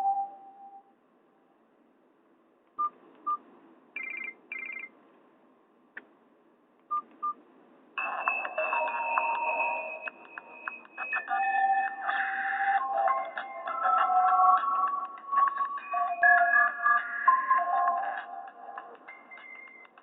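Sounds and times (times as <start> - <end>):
electronic ringtone melody: 4.0 - 4.9, 8.0 - 20.0
short electronic beeps: 4.0 - 4.9.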